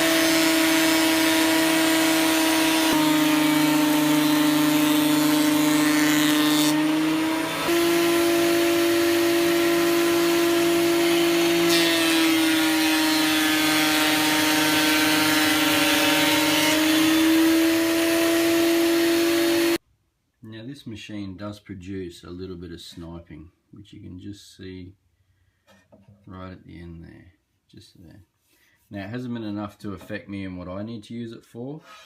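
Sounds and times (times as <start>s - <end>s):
thickness planer planing timber: 0.0s - 19.8s.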